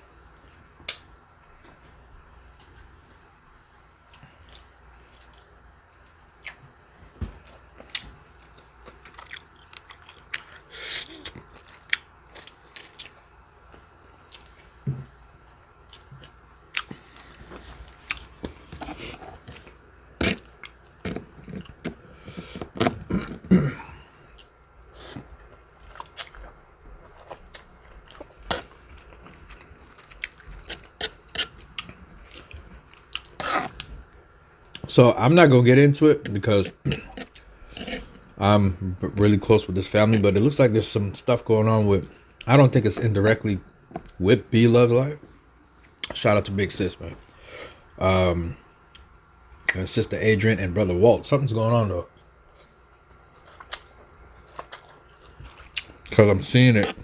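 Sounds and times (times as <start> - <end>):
person chewing food: 4.0 - 5.6, 7.4 - 14.6, 15.8 - 34.9, 36.6 - 38.4, 52.2 - 57.0.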